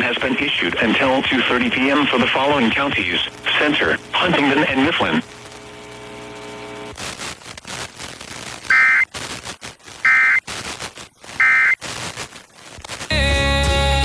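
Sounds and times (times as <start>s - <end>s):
radio static crackle: 0.0s - 13.2s
warbling digital data bursts: 8.7s - 9.2s, 10.0s - 10.5s, 11.4s - 11.9s
music: 13.1s - 14.0s.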